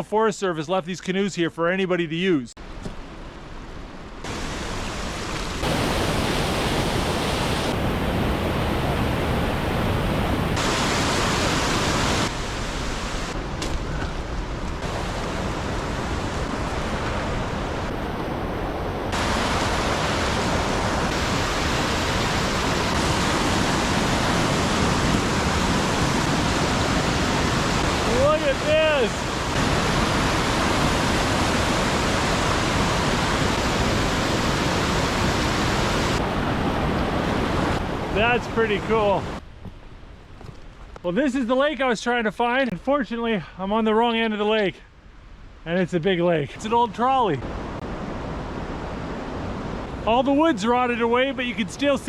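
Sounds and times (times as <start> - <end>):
steady rushing noise: 4.2 - 39.5.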